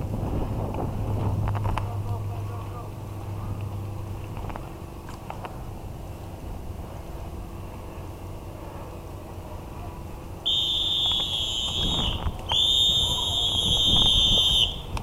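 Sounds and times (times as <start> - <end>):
shrill whistle blasts: 10.4 - 14.9.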